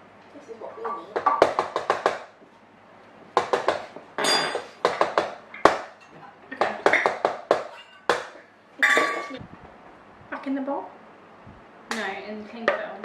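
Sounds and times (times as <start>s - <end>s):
kitchen utensils and dishes clattering: 3.5s - 9.4s.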